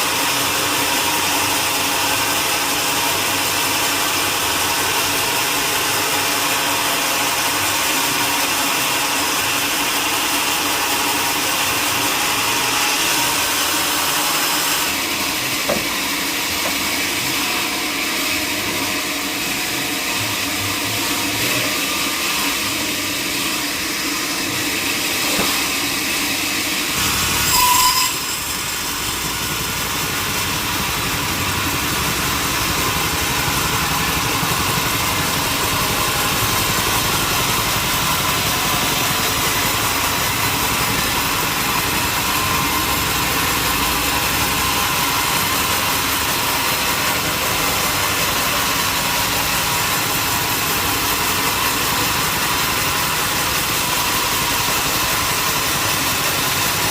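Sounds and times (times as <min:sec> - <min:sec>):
sawmill machinery running: 0:00.0 - 0:56.9.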